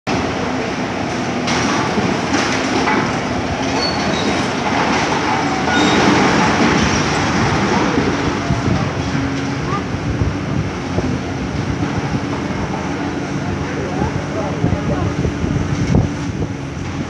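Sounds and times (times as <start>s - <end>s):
rumble and clatter of debris: 0.1s - 17.0s
high-pitched metal squeals: 3.6s - 4.5s, 5.2s - 7.2s.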